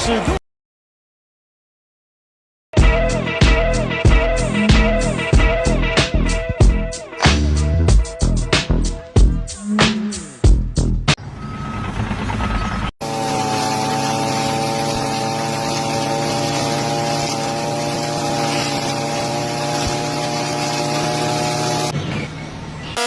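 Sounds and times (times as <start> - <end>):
reversing alarm beeps: 11.3 - 12.8
loud steady machine drone: 13.0 - 21.9.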